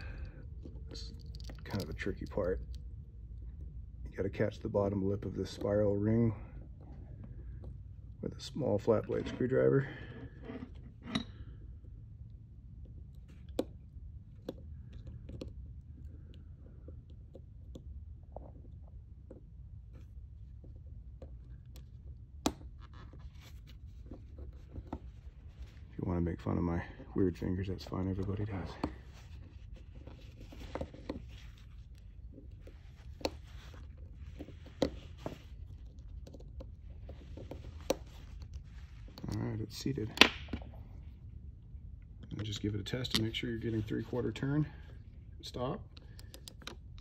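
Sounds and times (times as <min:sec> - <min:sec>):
low steady hum: 0:00.0 - 0:47.0.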